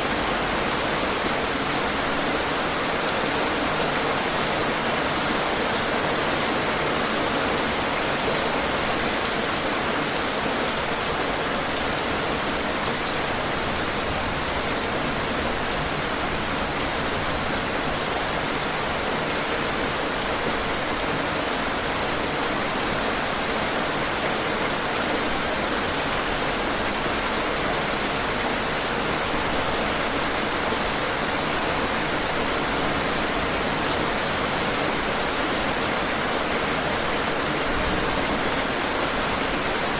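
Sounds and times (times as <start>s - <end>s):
rain pattering: 0.0s - 39.9s.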